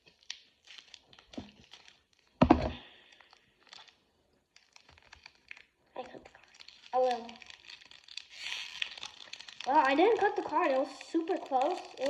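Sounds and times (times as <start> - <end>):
foil wrapper crinkling and tearing: 0.0 - 12.0.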